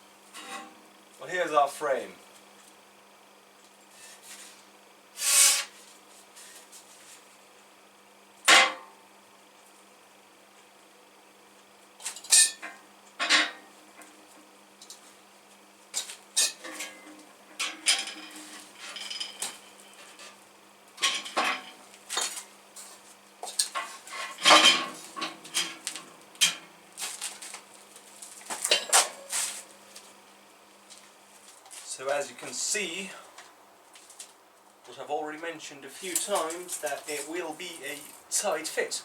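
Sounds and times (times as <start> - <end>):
metal parts clanking and scraping: 16.4 - 20.4.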